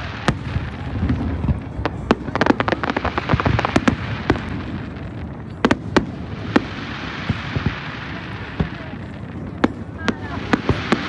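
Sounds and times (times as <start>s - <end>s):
fireworks cracks and bangs: 0.0s - 11.0s.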